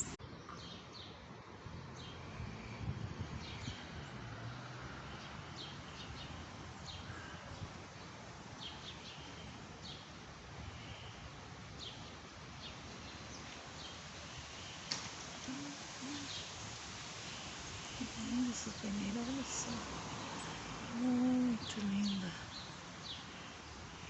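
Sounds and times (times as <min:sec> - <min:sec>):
small birds chirping: 0:00.0 - 0:01.3, 0:04.9 - 0:24.0
wind blowing: 0:01.5 - 0:04.8.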